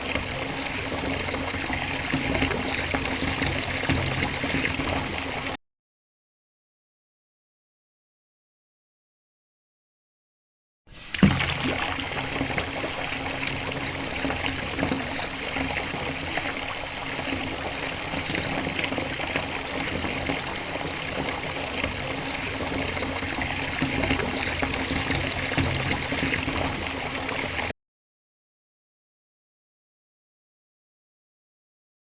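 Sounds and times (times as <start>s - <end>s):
running water: 0.0s - 5.6s, 10.9s - 27.7s.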